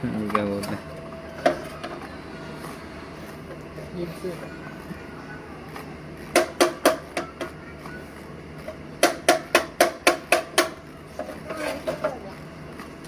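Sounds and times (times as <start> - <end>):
tool striking metal: 9.0 - 10.8.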